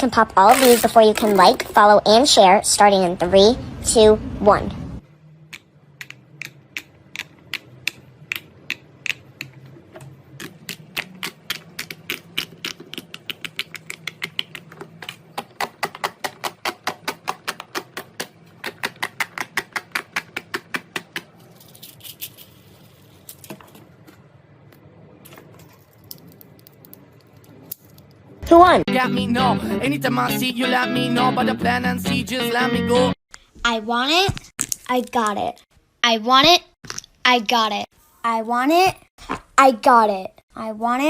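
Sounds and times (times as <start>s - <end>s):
fidget toy popping clicks: 10.4s - 15.2s.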